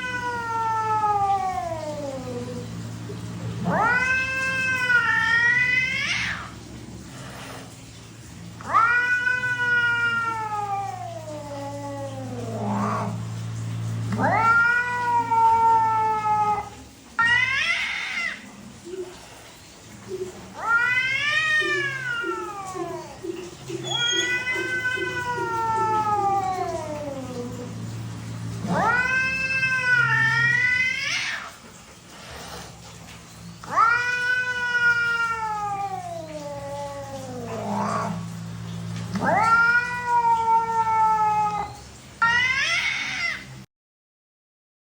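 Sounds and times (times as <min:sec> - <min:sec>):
animal yowling howls: 0:03.5 - 0:06.8, 0:08.6 - 0:13.2, 0:14.1 - 0:19.2, 0:20.1 - 0:28.0, 0:28.6 - 0:31.6, 0:33.6 - 0:38.3, 0:39.2 - 0:43.6
pet animal calling: 0:20.0 - 0:27.0.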